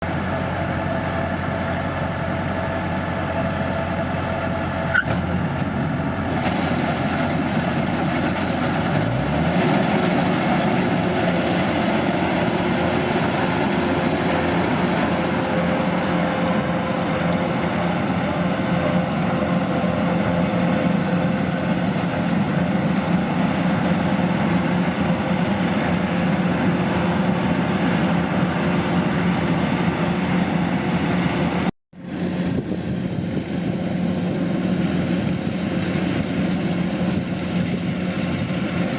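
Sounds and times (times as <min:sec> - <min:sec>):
combine harvester engine running: 0:00.0 - 0:38.9.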